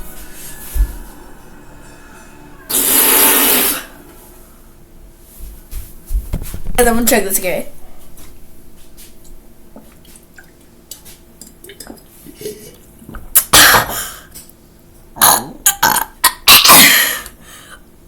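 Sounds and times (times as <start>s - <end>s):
person burping loudly: 15.2s - 16.9s.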